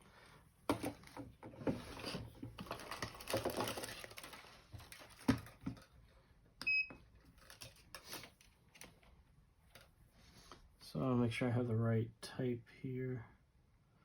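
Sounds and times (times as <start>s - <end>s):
rustling and handling noise: 0.0s - 10.8s.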